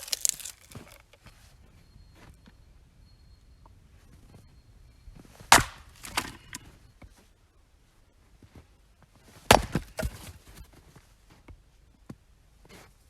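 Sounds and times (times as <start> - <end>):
split wood cracking and clattering: 0.0 - 1.3, 5.5 - 6.7, 9.5 - 10.4
axe chopping wood: 5.5 - 6.6, 9.5 - 10.4.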